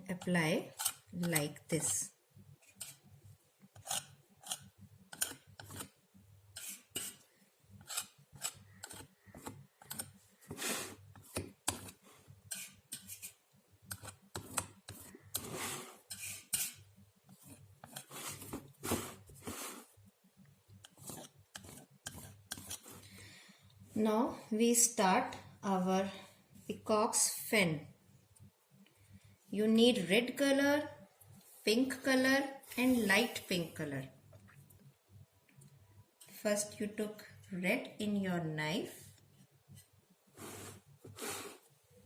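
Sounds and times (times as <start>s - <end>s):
painting knife scraping paint: 0.1s - 3.1s, 3.7s - 19.9s, 20.8s - 23.1s.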